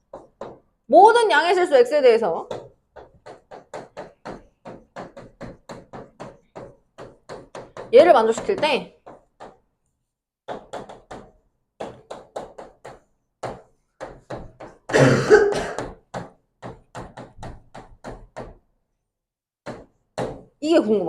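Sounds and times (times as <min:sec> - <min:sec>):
pen writing on a board: 0:00.0 - 0:00.7, 0:02.5 - 0:09.7, 0:10.4 - 0:14.9, 0:19.6 - 0:20.5.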